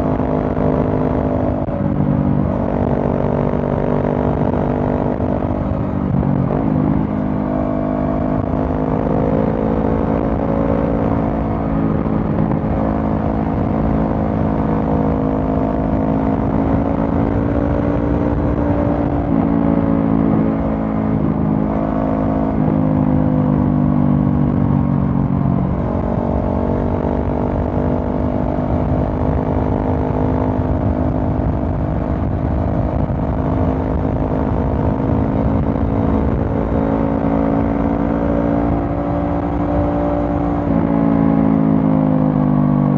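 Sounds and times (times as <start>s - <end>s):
motorcycle engine while riding: 0.0s - 42.9s.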